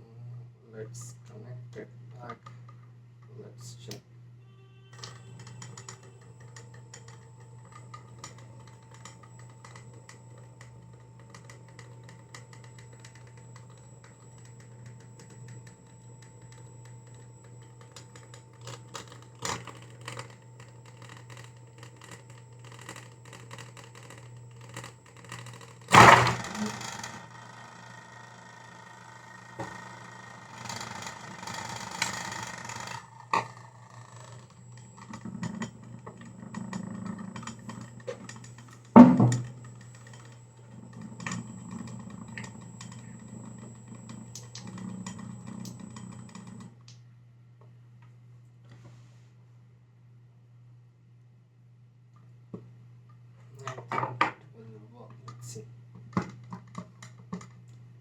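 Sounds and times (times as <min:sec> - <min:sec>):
parts clattering: 0:25.9 - 0:27.2.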